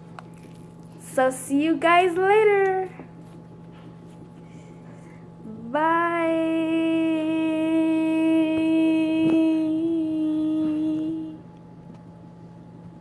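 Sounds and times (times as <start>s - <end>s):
person humming a long note: 5.5s - 11.4s.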